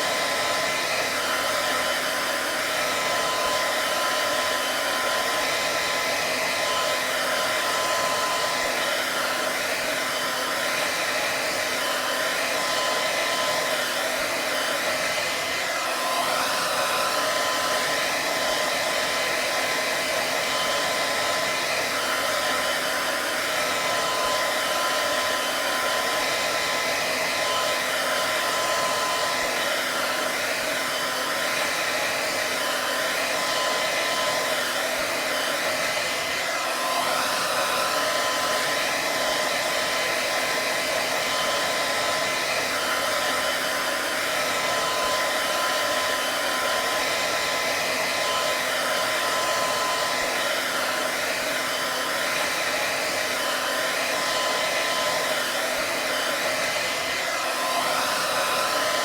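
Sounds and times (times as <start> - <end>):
hair dryer running: 0.0 - 59.0.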